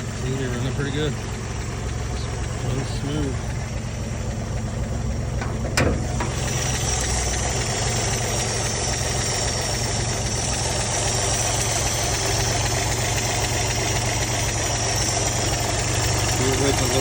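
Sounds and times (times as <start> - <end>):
truck engine idling: 0.0 - 17.0.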